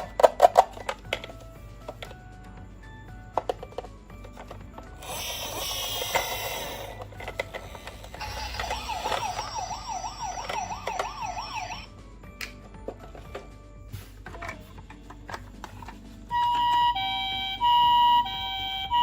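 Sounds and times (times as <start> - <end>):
electronic toy sound: 5.0 - 11.9, 16.3 - 19.0
toy siren warbling: 8.2 - 11.9, 16.3 - 19.0.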